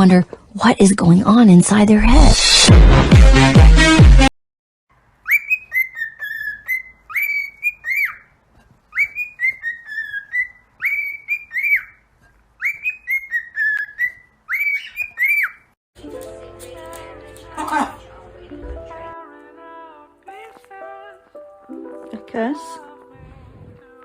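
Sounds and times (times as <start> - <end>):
parrot whistling a tune: 5.2 - 8.3, 8.9 - 12.0, 12.6 - 15.6.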